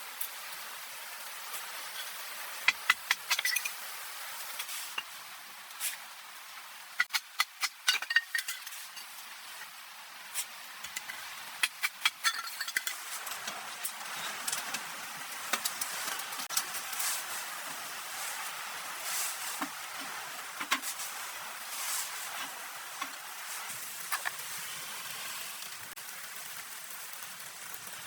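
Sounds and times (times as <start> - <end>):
steady hiss: 0.0 - 28.0
metal cookware clattering: 7.0 - 9.2, 10.9 - 17.0.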